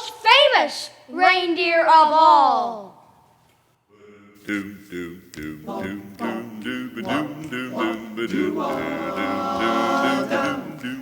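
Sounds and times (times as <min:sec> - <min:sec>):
barbershop chorus singing a cappella: 0:03.9 - 0:11.0.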